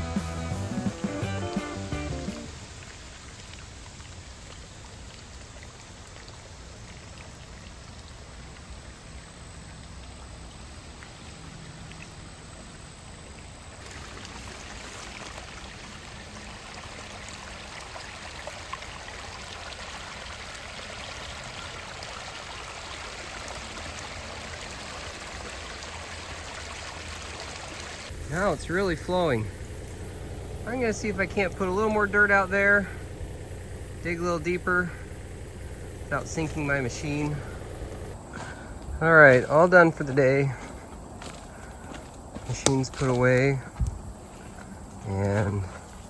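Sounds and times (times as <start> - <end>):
water rushing through channel: 13.2 - 29.6, 30.6 - 35.0.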